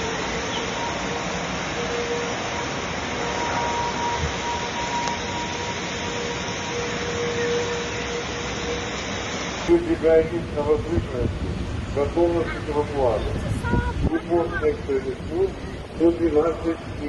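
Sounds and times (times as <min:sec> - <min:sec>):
faint steady tone: 0:00.0 - 0:09.7
floodwater rushing: 0:00.0 - 0:17.0.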